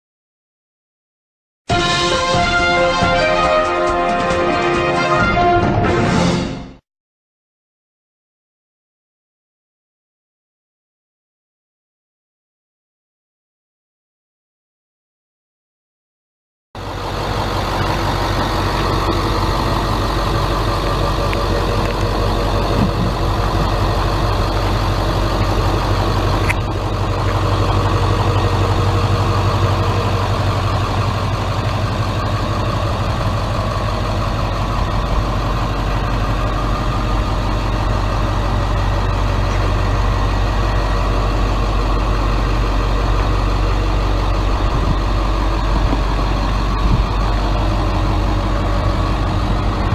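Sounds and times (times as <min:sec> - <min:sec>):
diesel bus engine idling: 0:16.8 - 0:49.9.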